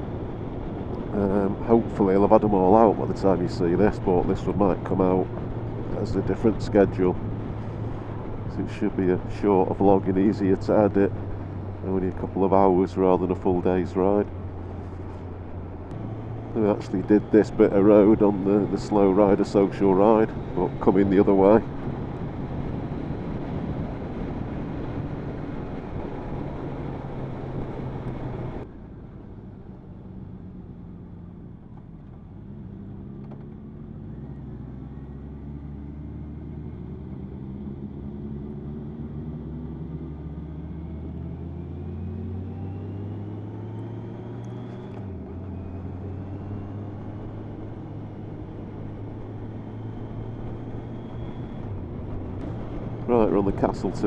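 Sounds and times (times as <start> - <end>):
wind rush over microphone: 20.2 - 28.7
motorcycle engine revving: 32.2 - 54.0.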